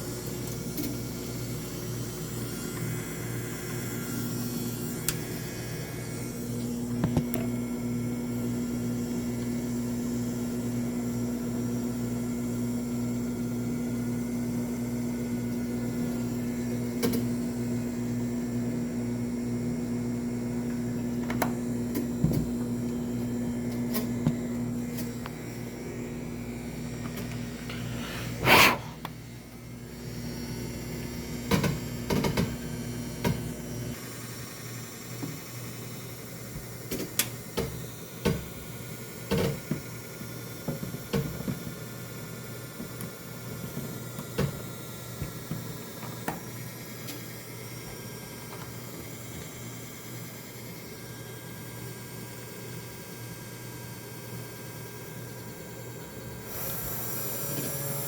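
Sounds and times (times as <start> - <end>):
small electric motor humming: 56.4 - 58.0.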